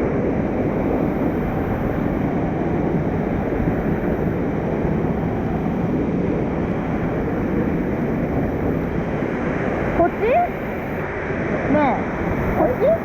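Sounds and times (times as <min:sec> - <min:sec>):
mountain stream rushing: 0:00.0 - 0:13.0.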